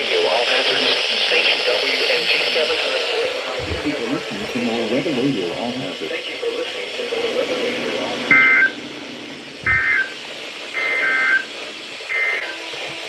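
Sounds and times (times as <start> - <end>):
radio hiss: 0.0 - 13.0
two-tone digital warbles: 9.6 - 10.2.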